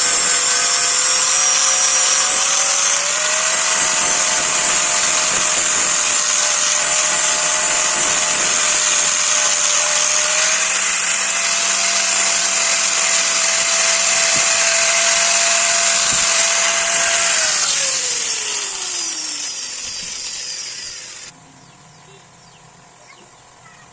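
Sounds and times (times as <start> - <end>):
electric grinder on steel: 0.0 - 21.3
grinder whine spinning down: 0.0 - 21.3.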